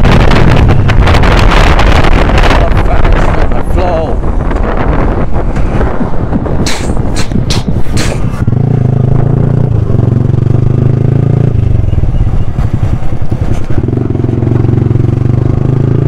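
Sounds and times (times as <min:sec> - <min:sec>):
wind on microphone: 0:00.0 - 0:16.0
motorcycle engine running: 0:04.4 - 0:16.0
sharp clatters: 0:06.6 - 0:08.4.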